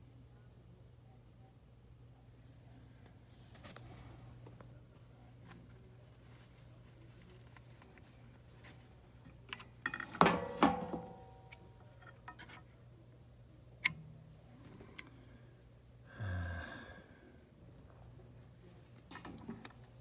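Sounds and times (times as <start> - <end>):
steady low hum: 11.0 - 20.0.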